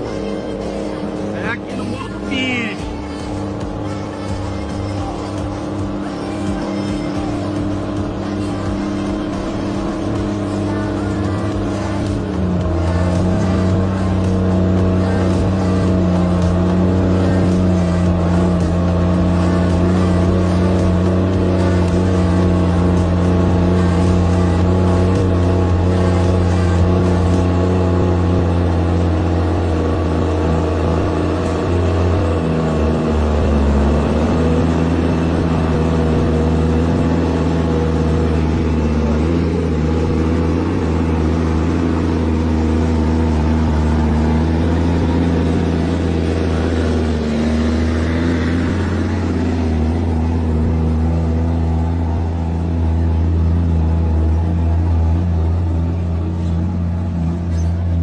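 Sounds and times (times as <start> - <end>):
truck engine rumbling under load: 0.0 - 58.0.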